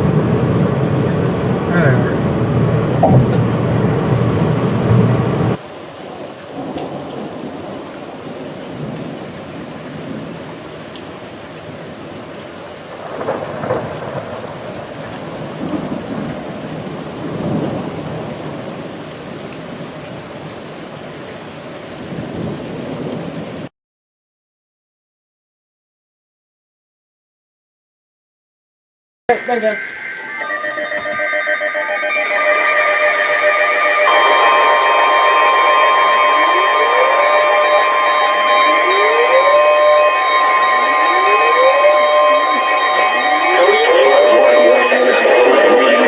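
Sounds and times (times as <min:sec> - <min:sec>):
thunder rolling: 0:00.0 - 0:23.7, 0:32.2 - 0:46.0
steady rain: 0:04.0 - 0:23.7, 0:32.2 - 0:46.0.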